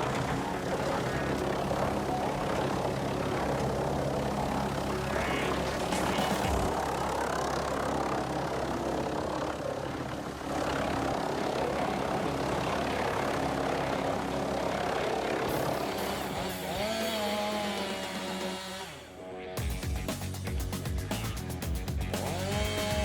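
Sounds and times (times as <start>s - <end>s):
wavering whine: 0.0s - 20.4s
wood chipper engine running: 15.5s - 18.9s, 21.9s - 23.0s.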